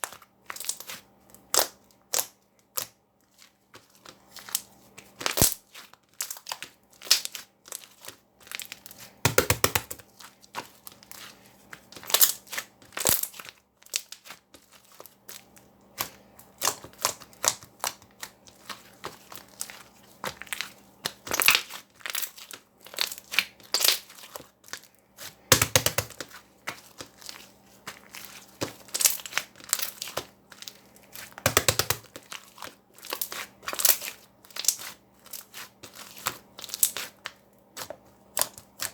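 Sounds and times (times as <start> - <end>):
slime crackling and popping: 20.3 - 24.9, 25.5 - 37.2.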